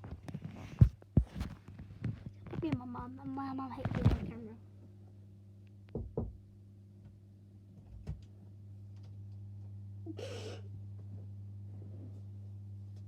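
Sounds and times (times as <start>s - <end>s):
soft knocks: 5.9s - 6.4s
person gasping: 10.1s - 10.7s.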